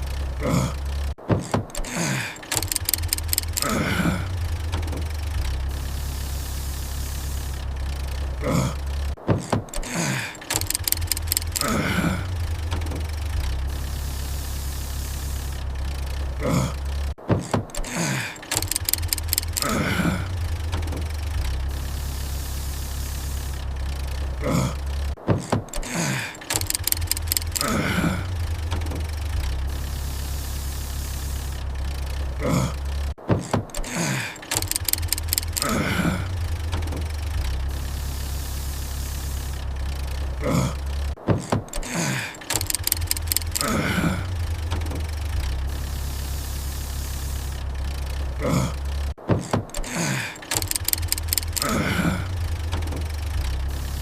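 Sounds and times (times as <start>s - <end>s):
engine low rumble: 0.0s - 1.2s, 1.9s - 9.2s, 9.8s - 17.2s, 17.9s - 25.2s, 25.8s - 33.2s, 33.9s - 41.2s, 41.9s - 49.2s, 49.9s - 54.0s
engine sputtering failing to start: 0.0s - 54.0s.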